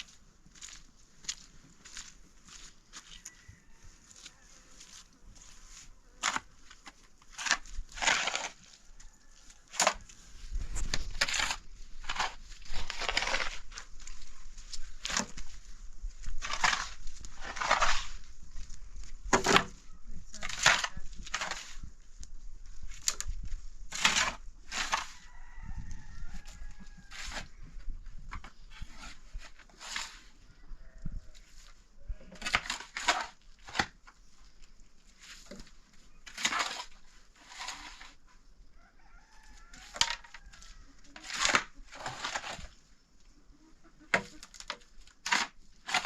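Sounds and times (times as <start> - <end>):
faint rooster crow: 2.5 - 5.1, 8.5 - 10.6, 24.8 - 28.0, 30.3 - 32.2, 38.6 - 42.3
chickens clucking and squawking: 38.4 - 44.6.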